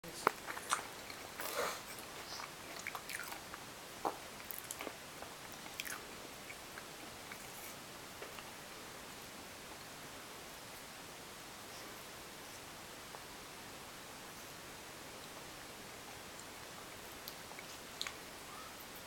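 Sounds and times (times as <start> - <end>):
baby chewing apple crunches: 0.2 - 8.6.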